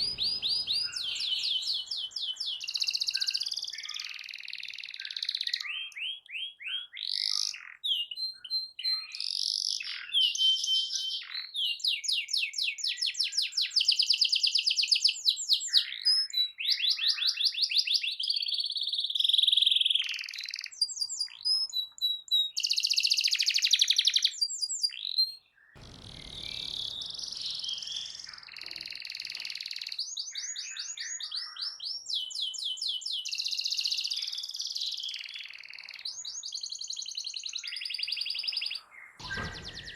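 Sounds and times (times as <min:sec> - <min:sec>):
low rumbling noise: 0:00.0 - 0:02.6, 0:25.8 - 0:28.8
canary singing trills: 0:00.0 - 0:11.5.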